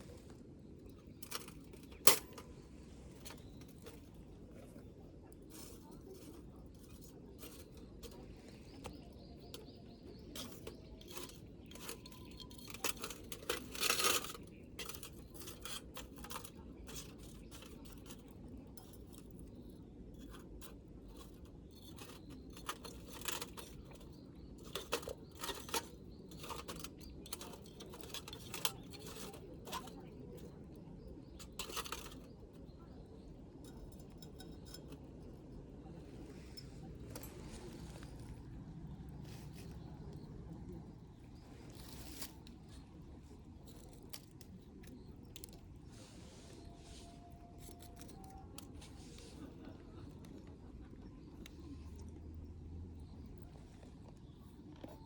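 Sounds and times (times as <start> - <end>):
small objects clicking and clinking: 5.5 - 19.6, 20.2 - 30.5, 46.6 - 48.8
low background rumble: 32.6 - 46.0.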